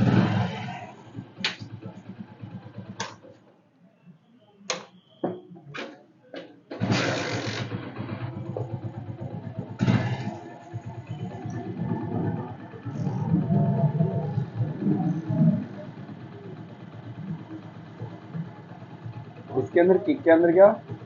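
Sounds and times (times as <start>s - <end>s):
motorcycle engine running: 0.0s - 3.5s, 6.8s - 21.0s
kick-start spring noise: 6.7s - 21.0s.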